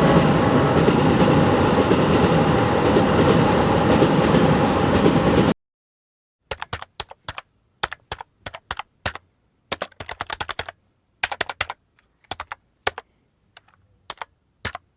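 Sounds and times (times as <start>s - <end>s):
keyboard typing clicks: 6.5s - 14.9s.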